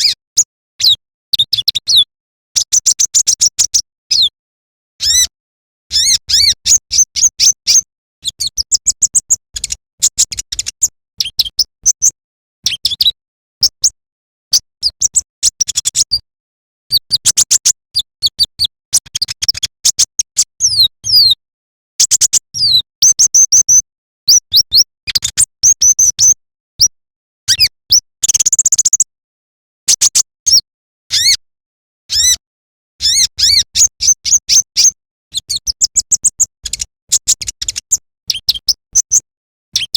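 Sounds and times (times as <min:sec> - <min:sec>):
bird chirping and whistling: 0:05.0 - 0:05.3, 0:05.9 - 0:09.3, 0:30.5 - 0:31.4, 0:32.1 - 0:32.4, 0:33.0 - 0:39.2.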